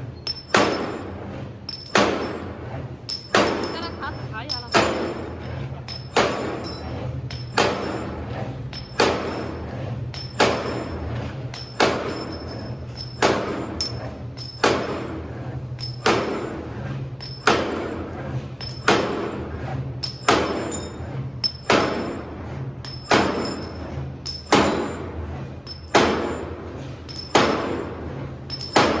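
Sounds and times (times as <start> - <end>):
machine humming: 1.8 - 16.7.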